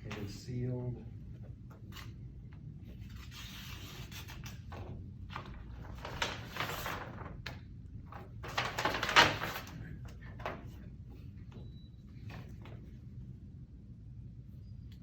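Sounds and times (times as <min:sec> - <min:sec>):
paper rustling and scraping: 0:02.9 - 0:07.5, 0:08.2 - 0:10.6
paper crinkles: 0:05.3 - 0:07.6, 0:08.2 - 0:10.2.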